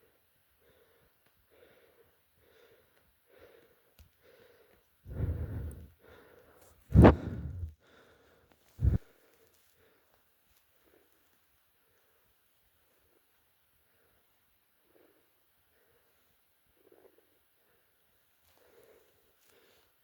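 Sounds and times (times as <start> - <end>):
person breathing hard through mask: 1.5 - 9.0
mask rubbing: 5.1 - 5.9, 6.9 - 7.7, 8.8 - 9.0
short thump: 6.9 - 7.7.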